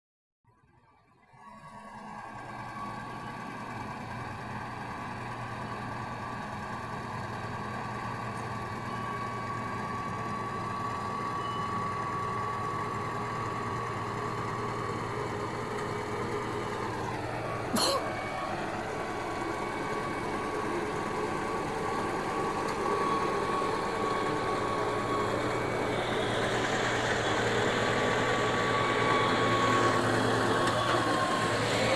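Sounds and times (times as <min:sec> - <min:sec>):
bulldozer diesel engine whining: 0:01.3 - 0:31.9.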